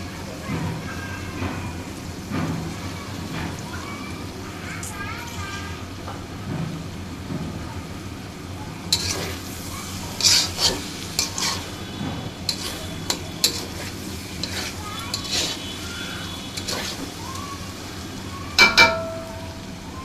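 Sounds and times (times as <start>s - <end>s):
faint sizzle: 0.0s - 20.0s
utensil scraping in a pot: 8.9s - 17.3s
metal clank: 18.6s - 19.6s.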